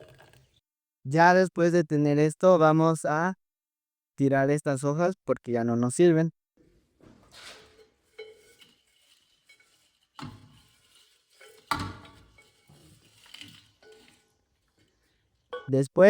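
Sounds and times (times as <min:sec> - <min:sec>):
metal kitchenware clattering: 0:07.2 - 0:15.7.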